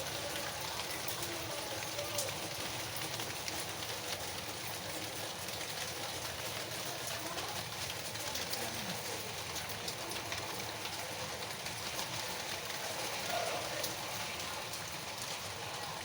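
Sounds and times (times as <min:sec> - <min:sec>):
steady rain falling: 0:00.0 - 0:16.0.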